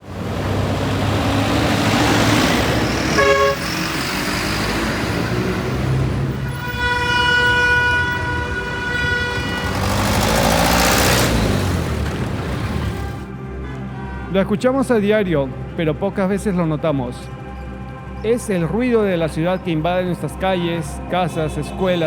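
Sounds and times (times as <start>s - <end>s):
passing vehicles: 0.0s - 14.3s
car horns honking: 0.2s - 14.3s.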